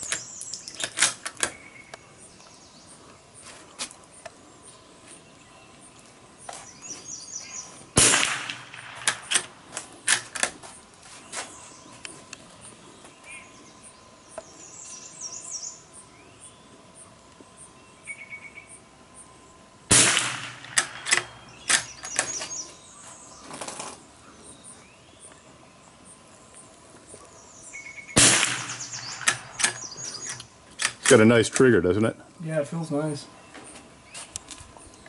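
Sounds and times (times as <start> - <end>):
sharp clicks and cracks: 0.0 - 2.5, 8.0 - 11.0, 19.9 - 22.5, 28.2 - 31.7
birds chirping: 0.0 - 35.0
rifle shot with echo: 8.0 - 10.5, 19.9 - 22.1, 28.2 - 30.0.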